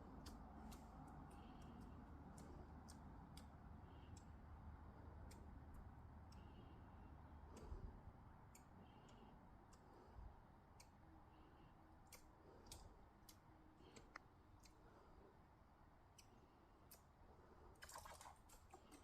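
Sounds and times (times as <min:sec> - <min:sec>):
squirrel claws clicking on tree: 0:00.1 - 0:04.4, 0:17.8 - 0:19.0.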